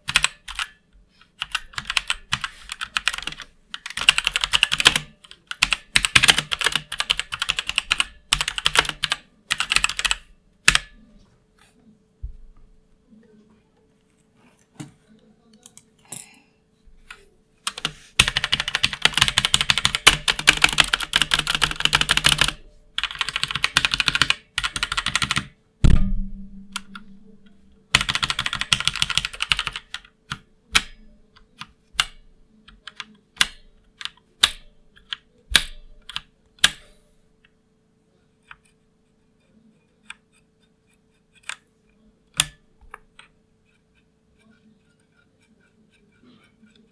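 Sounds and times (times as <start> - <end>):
mechanical keyboard typing: 0.0 - 11.0, 17.1 - 26.1, 26.7 - 36.8, 42.4 - 43.4
heavy key thud: 25.8 - 28.0.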